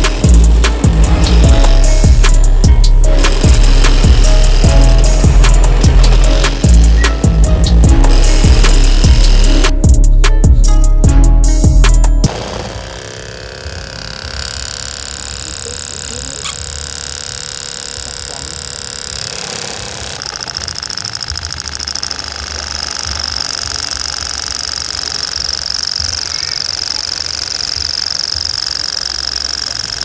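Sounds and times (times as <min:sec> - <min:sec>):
small motor whining: 0:00.0 - 0:09.9, 0:12.2 - 0:30.0.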